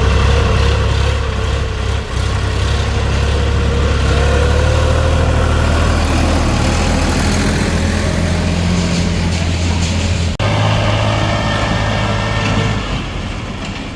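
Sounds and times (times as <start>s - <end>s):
diesel engine running: 0.0s - 13.9s.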